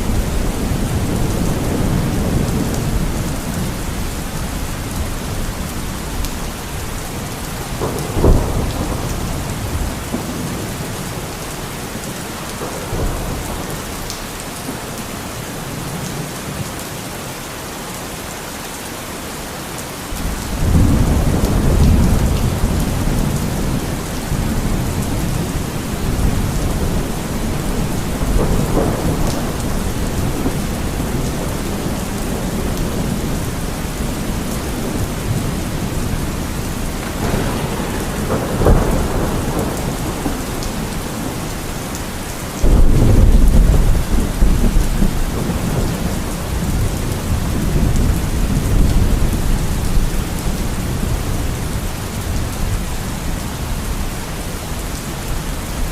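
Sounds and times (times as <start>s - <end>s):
rolling thunder rumble: 0.0s - 11.4s, 20.2s - 54.1s
heavy rain: 0.0s - 55.9s
thunder clap: 7.6s - 10.8s, 20.2s - 41.7s, 42.6s - 51.0s.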